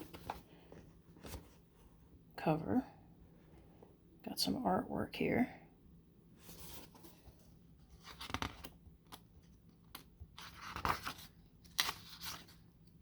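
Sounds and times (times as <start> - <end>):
book pages turning: 0.0 - 1.6, 6.4 - 13.0.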